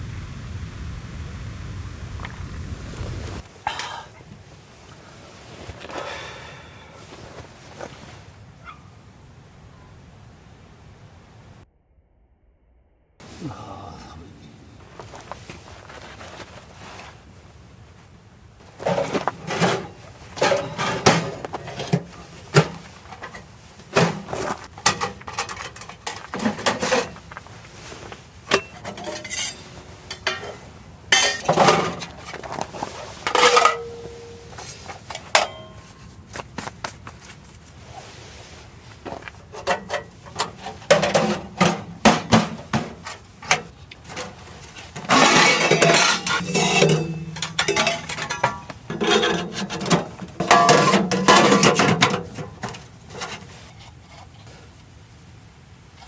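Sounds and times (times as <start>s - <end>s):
camping gear knocks and metal clinks: 18.6s - 37.8s, 39.0s - 54.6s.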